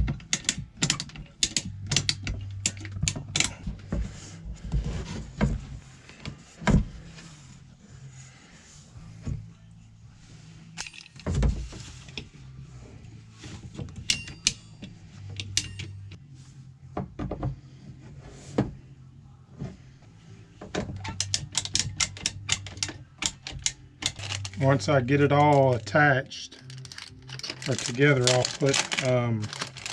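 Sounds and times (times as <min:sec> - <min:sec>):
clicks and knocks of pipe fittings: 0:00.0 - 0:04.2, 0:13.7 - 0:16.2, 0:20.6 - 0:29.9
low steady hum: 0:00.0 - 0:29.9.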